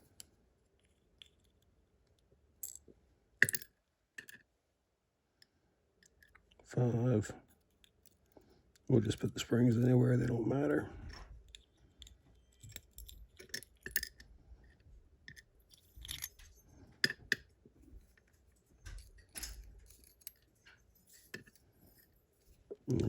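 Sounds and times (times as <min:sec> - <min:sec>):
metal lock parts clicking: 0:11.1 - 0:14.2, 0:15.3 - 0:17.5, 0:18.9 - 0:21.6.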